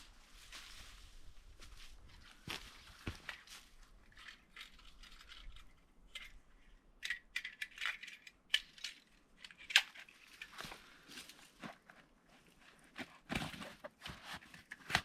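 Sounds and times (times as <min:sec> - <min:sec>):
footsteps on stony trail: 0:00.0 - 0:04.3.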